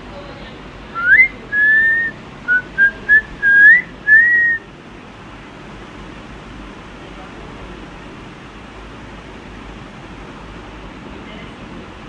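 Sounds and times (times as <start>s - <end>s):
person whistling: 1.0s - 4.6s.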